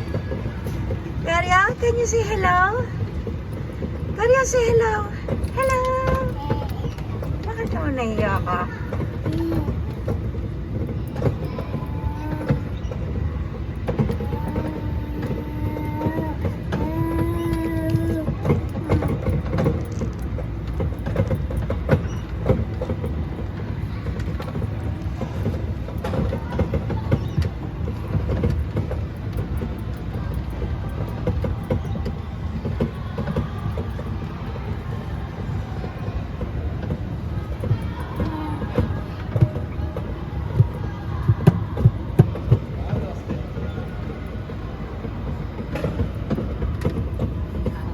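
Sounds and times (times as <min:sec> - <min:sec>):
ride-on train rumbling: 0:00.0 - 0:47.9
wheels clicking on track: 0:00.0 - 0:47.9.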